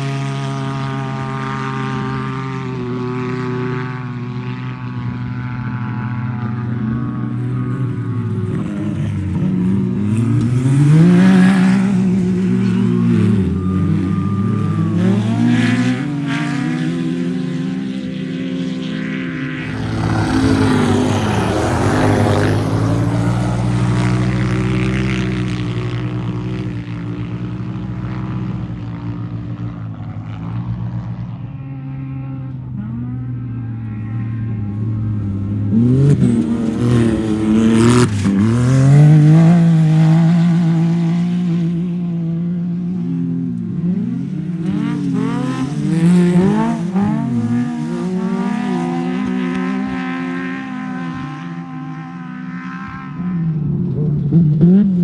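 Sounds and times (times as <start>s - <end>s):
race vehicle engines revving: 0.0s - 55.0s
vehicle passing by: 19.6s - 26.4s.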